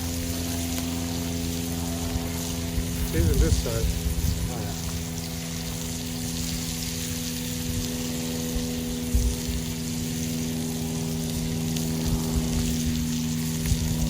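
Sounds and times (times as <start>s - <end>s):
constant hiss: 0.0s - 14.0s
low mechanical hum: 0.0s - 14.0s.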